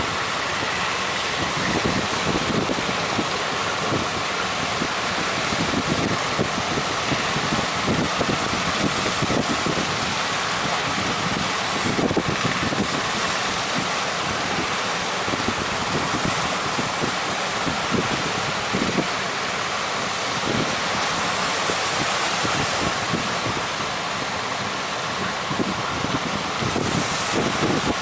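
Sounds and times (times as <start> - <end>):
strong wind rushing: 0.0 - 19.2, 25.0 - 28.0
sea waves: 0.0 - 28.0
wind buffeting microphone: 0.0 - 28.0.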